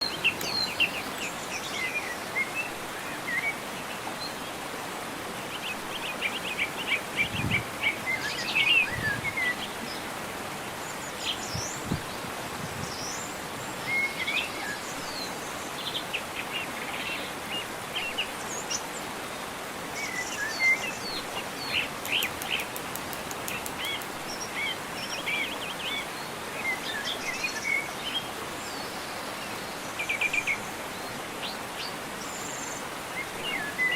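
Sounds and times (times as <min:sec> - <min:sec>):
steady background hiss: 0:00.0 - 0:33.9
birds chirping and trilling: 0:20.0 - 0:33.9.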